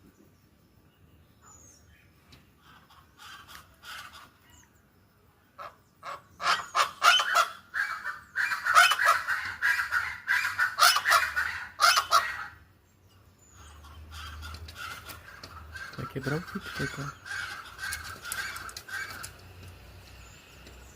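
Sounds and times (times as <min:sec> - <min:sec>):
geese honking: 0:05.6 - 0:12.6, 0:13.6 - 0:20.0.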